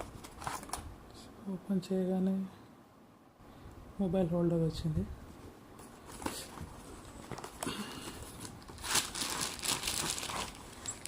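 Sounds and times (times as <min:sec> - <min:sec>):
packaging crinkling and rustling: 0:00.0 - 0:00.9, 0:05.8 - 0:11.0.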